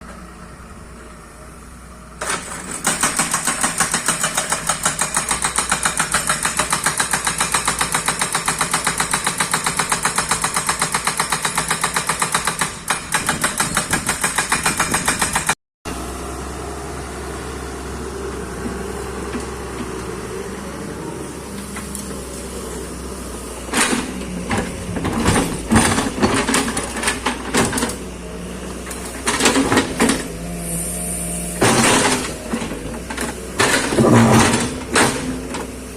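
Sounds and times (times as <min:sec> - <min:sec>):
excavator engine rumble: 0:00.0 - 0:09.7, 0:12.7 - 0:35.9
knocks and clanks: 0:23.7 - 0:28.0, 0:31.6 - 0:35.7.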